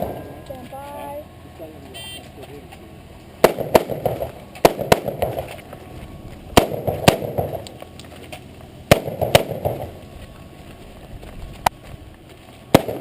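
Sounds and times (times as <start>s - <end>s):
rifle shots with echo: 3.4s - 5.5s, 6.5s - 7.6s, 8.9s - 9.9s, 12.7s - 13.0s.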